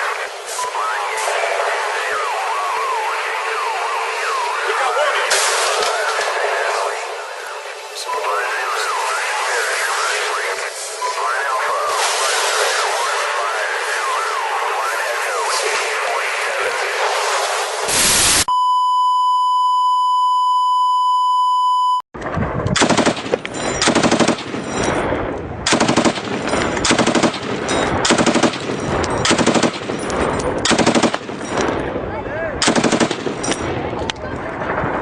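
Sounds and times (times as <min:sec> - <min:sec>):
steady high beep: 0:18.5 - 0:22.0
airsoft guns firing bursts: 0:22.8 - 0:24.8, 0:25.7 - 0:30.1, 0:30.7 - 0:31.5, 0:32.6 - 0:33.6.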